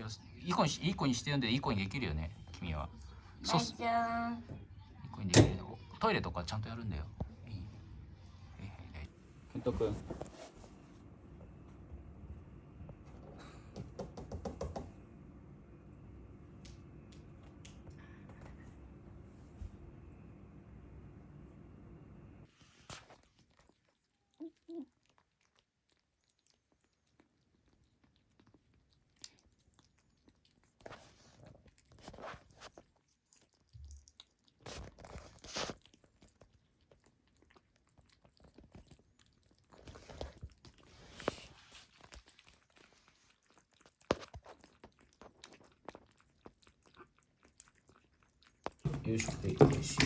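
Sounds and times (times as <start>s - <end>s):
kitten crunching and scratching: 22.5s - 50.0s.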